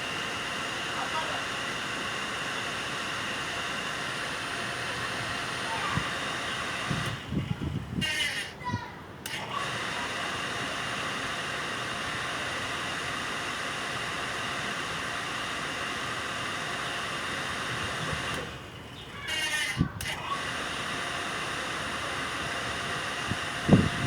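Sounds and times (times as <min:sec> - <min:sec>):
water pump running: 0:00.0 - 0:24.0
pump switch click: 0:05.6 - 0:08.5, 0:09.2 - 0:10.0, 0:17.8 - 0:20.7.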